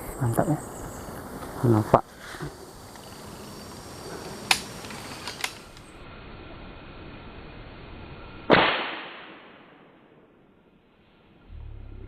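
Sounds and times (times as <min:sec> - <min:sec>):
sharp light clicks: 0:04.2 - 0:05.9
air rifle shot: 0:08.4 - 0:10.3.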